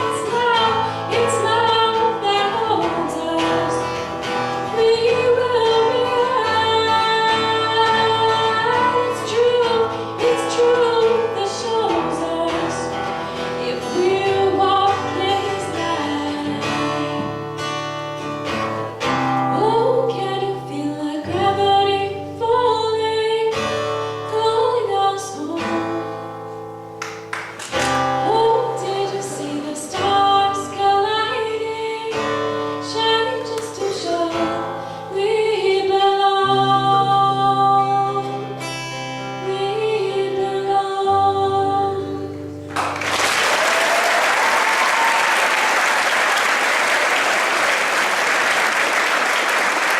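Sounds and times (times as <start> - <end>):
woman singing: 0.0 - 17.4, 19.0 - 26.4, 28.0 - 42.7
guitar accompaniment: 0.0 - 49.9.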